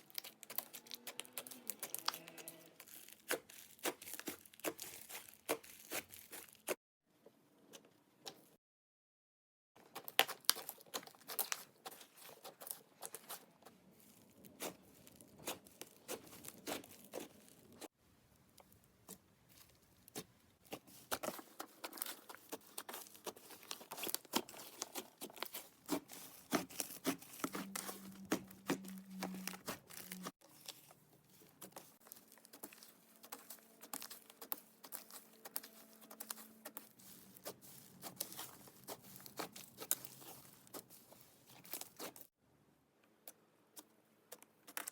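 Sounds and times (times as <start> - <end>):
slime squished by hand: 0.0 - 6.8, 14.0 - 17.9, 18.6 - 30.8, 31.4 - 42.3.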